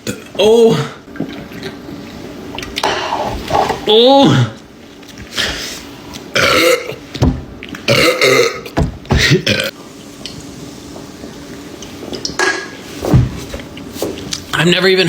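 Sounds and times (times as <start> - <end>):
man belching: 0.0 - 1.0, 6.4 - 7.0, 7.9 - 9.7.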